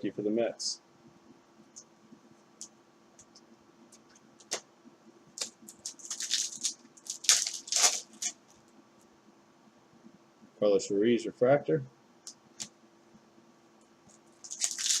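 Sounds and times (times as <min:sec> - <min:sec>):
crisp rustling of cards: 0:05.4 - 0:08.7, 0:14.1 - 0:15.0.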